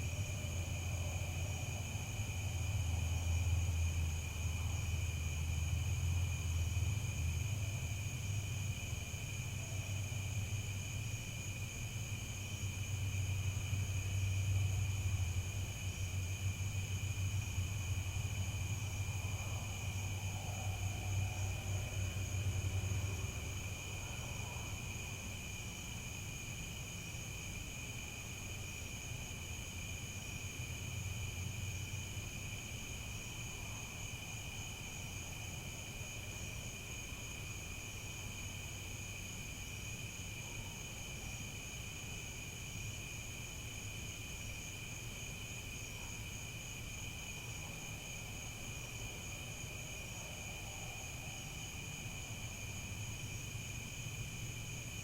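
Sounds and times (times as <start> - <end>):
crickets chirping: 0.0 - 55.0.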